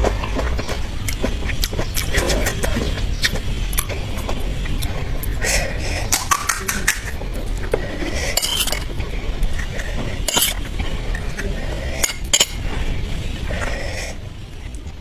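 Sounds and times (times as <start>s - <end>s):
cutlery clinking on dishes: 8.4s - 8.9s, 10.3s - 10.6s, 12.0s - 12.6s.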